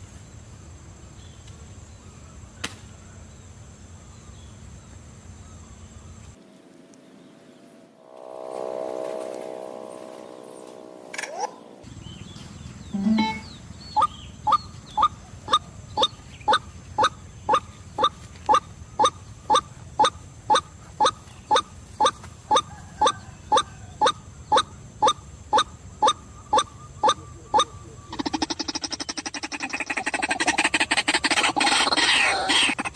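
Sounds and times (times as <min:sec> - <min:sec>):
waterhen nasal kwak calls: 0:14.0 - 0:32.9.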